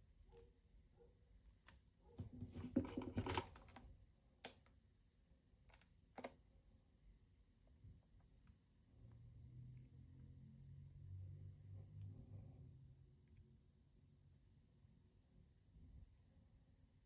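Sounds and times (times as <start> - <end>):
handling noises: 2.1 - 3.8.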